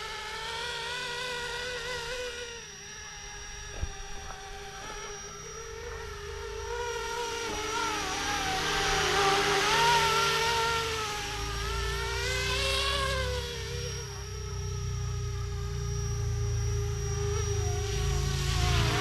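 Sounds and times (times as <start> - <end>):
rc helicopter motor whine: 0.0 - 19.0.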